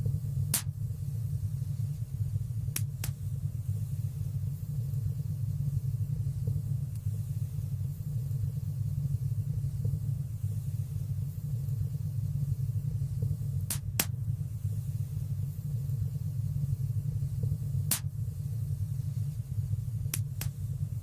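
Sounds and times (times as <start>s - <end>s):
low rumble of fire flames: 0.0s - 21.0s
sharp fire crackles: 13.7s - 14.2s, 17.8s - 18.4s.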